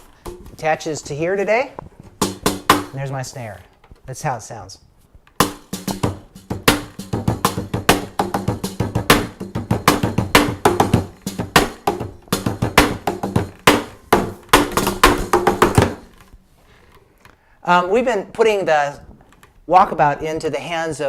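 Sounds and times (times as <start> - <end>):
hand drum groove: 2.1 - 3.0, 5.4 - 16.1.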